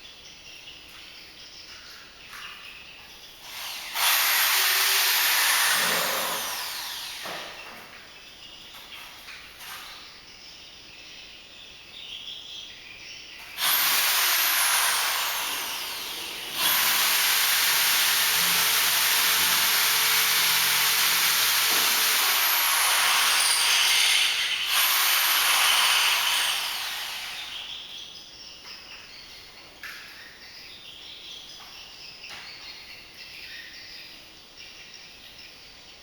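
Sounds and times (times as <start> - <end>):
electric drill boring into concrete: 3.4 - 7.6, 13.5 - 27.7.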